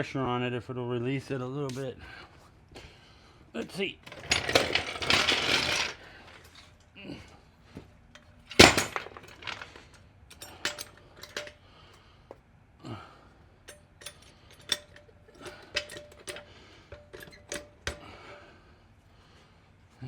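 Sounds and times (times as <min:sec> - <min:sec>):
hand tools clinking on metal: 0:08.2 - 0:11.7, 0:13.6 - 0:18.2.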